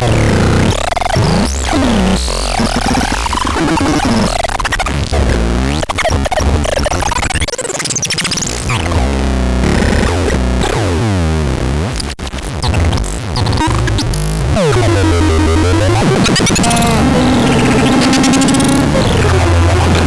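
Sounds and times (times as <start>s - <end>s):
pulsing bass: 0.0s - 7.4s, 8.4s - 20.0s
synthesized tones sweeping in pitch: 14.6s - 20.0s.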